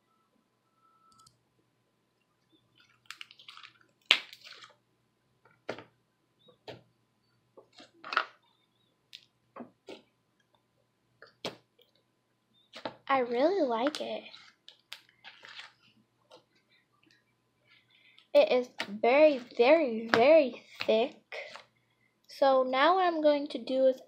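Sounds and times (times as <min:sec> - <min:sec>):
slime squelching and popping: 0:02.8 - 0:04.8.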